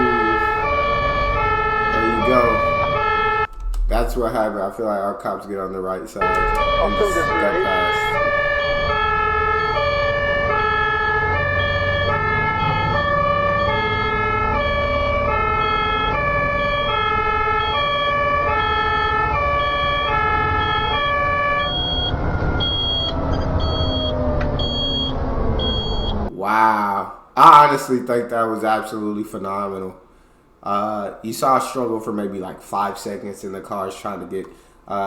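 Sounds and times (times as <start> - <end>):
ambulance two-tone siren: 0.0 - 4.3, 6.2 - 26.3
slowly falling tone: 0.0 - 4.8, 6.2 - 12.1
road traffic rumble: 6.2 - 26.3.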